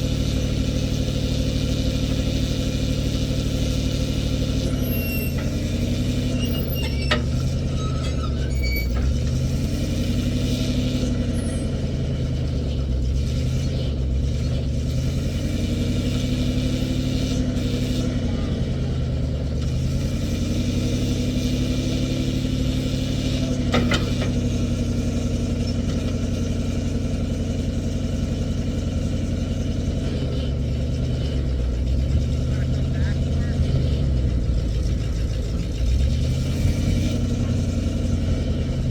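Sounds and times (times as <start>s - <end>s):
backhoe engine running: 0.0s - 38.9s
metallic clank: 23.6s - 24.8s.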